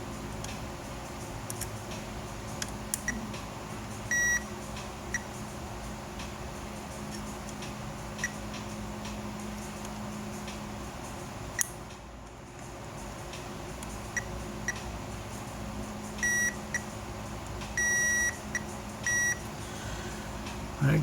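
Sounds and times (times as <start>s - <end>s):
steady low hum: 0.0s - 21.0s
multimeter continuity beeps: 3.0s - 3.3s, 4.1s - 4.5s, 16.2s - 16.9s, 17.8s - 19.4s.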